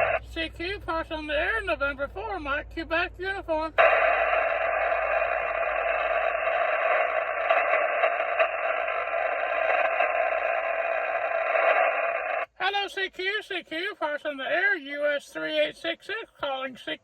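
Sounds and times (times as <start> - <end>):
radio receiver hiss: 0.0 - 0.4, 3.7 - 12.6.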